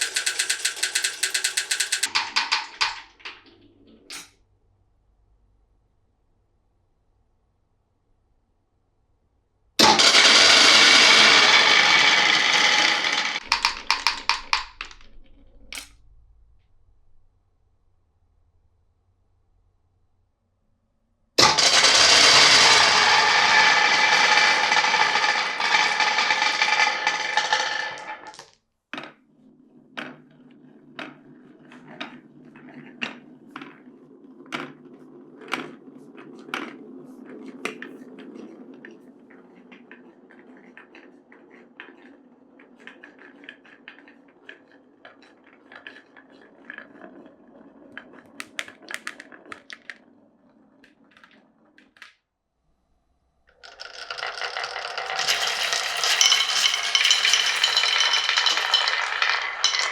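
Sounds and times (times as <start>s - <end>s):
marbles clacking and knocking: 0.0s - 4.3s, 9.8s - 15.9s, 21.4s - 29.2s, 37.6s - 52.2s, 53.5s - 59.9s
marbles rolling on wooden track: 0.0s - 4.3s, 9.8s - 15.9s, 21.4s - 52.2s, 53.5s - 59.9s
rattling rush of marbles: 9.8s - 15.1s, 21.4s - 28.4s, 53.6s - 59.9s.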